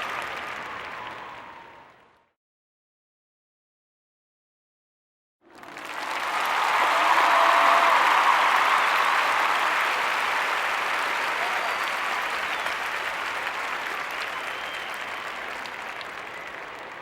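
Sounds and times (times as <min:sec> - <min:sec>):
crowd applauding: 0:00.0 - 0:02.2, 0:05.5 - 0:17.0
faint shouts or whistles: 0:14.2 - 0:15.3.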